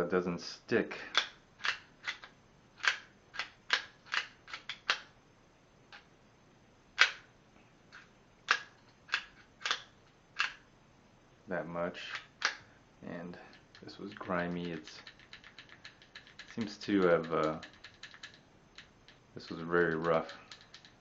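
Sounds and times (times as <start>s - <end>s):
pistol action metallic clicks: 1.1s - 5.1s, 7.0s - 7.3s, 8.5s - 10.6s.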